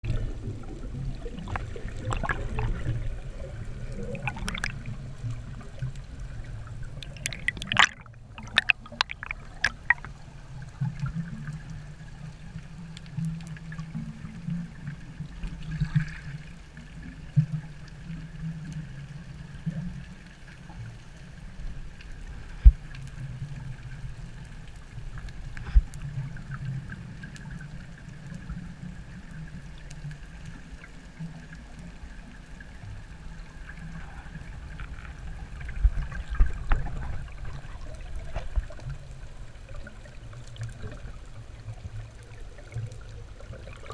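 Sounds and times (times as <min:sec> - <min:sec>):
muffled underwater rumble: 0:00.0 - 0:43.9
sharp underwater clicks: 0:01.4 - 0:02.9, 0:04.0 - 0:05.4, 0:06.9 - 0:10.2.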